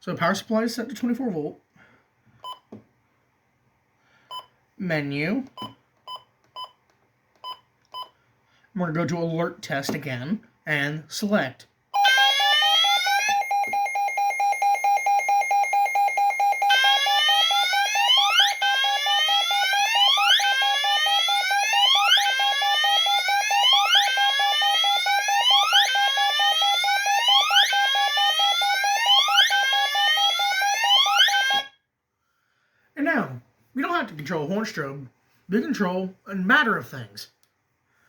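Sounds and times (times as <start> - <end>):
rising alarm sweep: 12.0 - 31.7
fire alarm horn pulsing tone: 12.0 - 31.8.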